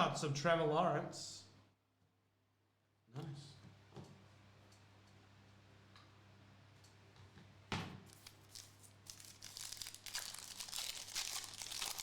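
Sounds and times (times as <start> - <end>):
wrapper crackling and crinkling: 8.1 - 12.0
wrapper ripping: 8.1 - 12.0.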